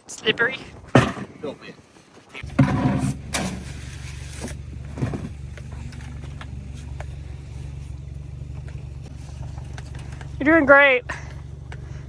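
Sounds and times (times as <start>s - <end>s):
engine idling: 2.4s - 12.0s.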